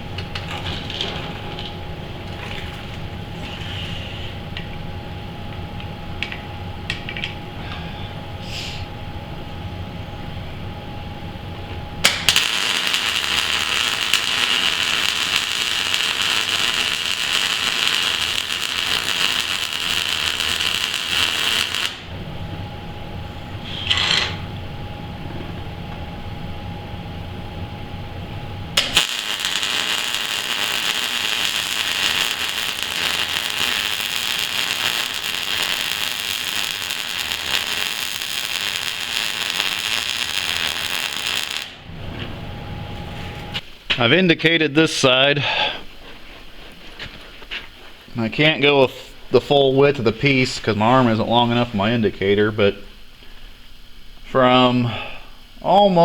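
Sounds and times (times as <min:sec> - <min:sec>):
low hum: 0:00.0 - 0:43.8.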